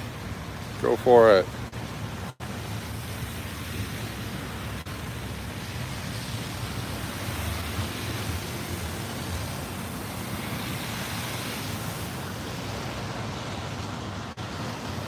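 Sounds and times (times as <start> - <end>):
floodwater rushing: 0.0 - 15.0.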